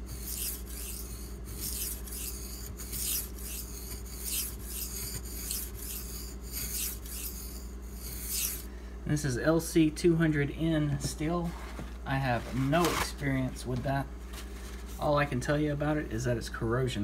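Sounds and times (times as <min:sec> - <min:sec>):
knife rasping on whetstone: 0:00.0 - 0:08.7
steady low hum: 0:00.0 - 0:17.0.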